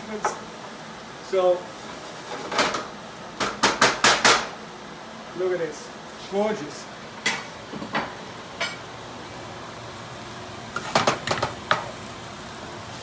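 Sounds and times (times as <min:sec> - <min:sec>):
food sizzling: 0:00.0 - 0:13.0
utensil scraping frying pan: 0:10.7 - 0:12.0.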